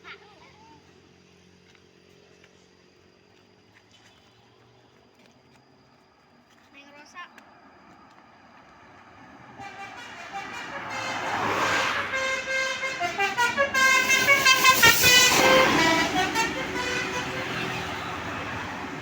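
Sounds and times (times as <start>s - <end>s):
bus engine and road noise: 0.0s - 19.0s
bus multi-tone horn tune: 9.4s - 19.0s.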